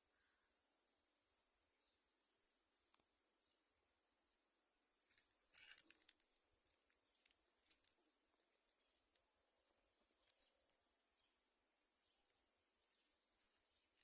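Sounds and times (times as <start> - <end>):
insect trill: 0.0 - 14.0.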